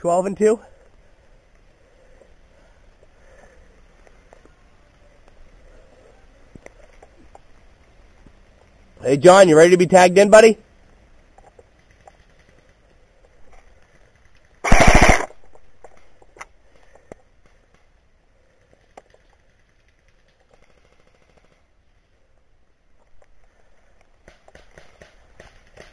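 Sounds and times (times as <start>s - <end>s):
small ticks: 10.8s - 14.6s, 15.4s - 21.6s
airsoft gun full-auto burst: 14.6s - 15.4s.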